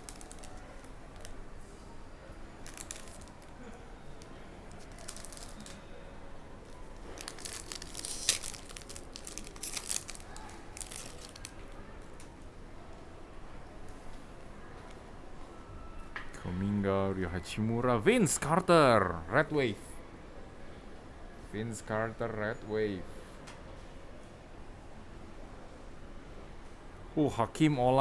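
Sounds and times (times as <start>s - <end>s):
wrapper tearing open: 0.0s - 1.3s, 2.6s - 3.6s, 4.2s - 5.8s, 6.8s - 11.7s
card pack wrapper crinkling: 0.0s - 1.4s, 2.6s - 3.6s, 4.2s - 5.8s, 6.7s - 11.7s.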